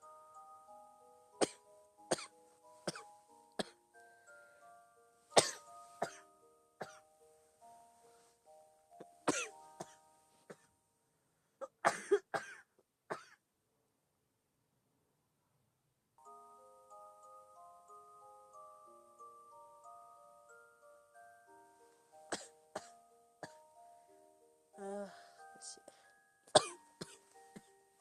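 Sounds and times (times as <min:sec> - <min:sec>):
soft chiming melody: 0:00.0 - 0:11.2, 0:16.2 - 0:28.0
girl coughing: 0:01.4 - 0:02.3, 0:05.4 - 0:06.2, 0:09.2 - 0:10.7, 0:11.6 - 0:13.4, 0:22.3 - 0:23.6, 0:26.5 - 0:27.7.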